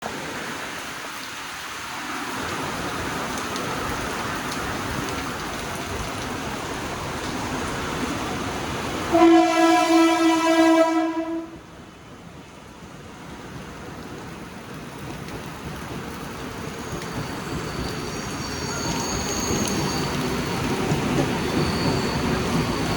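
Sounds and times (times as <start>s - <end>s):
heavy rain: 0.0s - 22.9s
train running: 1.8s - 22.9s
train horn blast: 9.1s - 11.7s.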